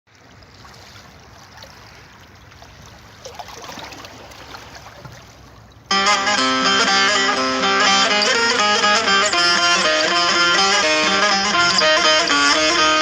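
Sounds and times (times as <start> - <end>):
folk music with plucked strings: 5.9 - 13.0.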